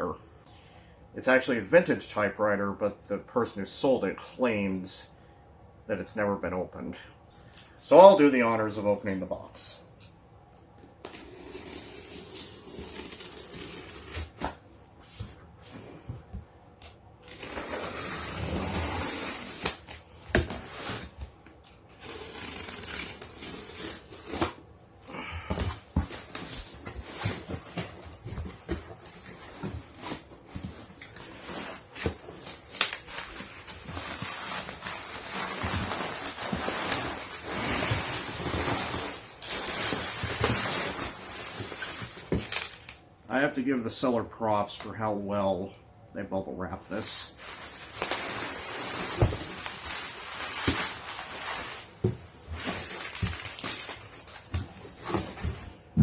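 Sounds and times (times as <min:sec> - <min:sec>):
cardboard rustling and scraping: 0:25.4 - 0:42.9, 0:46.9 - 0:56.0.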